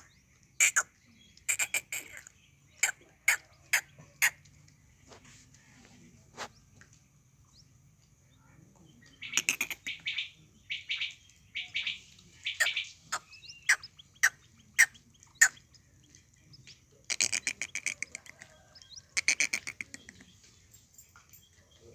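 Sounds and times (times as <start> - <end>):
quail calling: 0.0 - 4.4, 9.1 - 15.8, 17.0 - 20.3.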